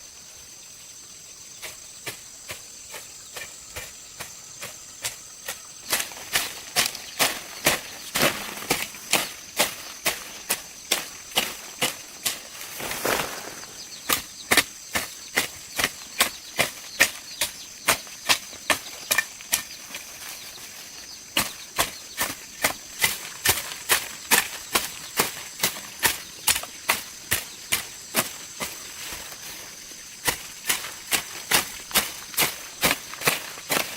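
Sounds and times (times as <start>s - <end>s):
high-pitched insect drone: 6.2s - 14.9s.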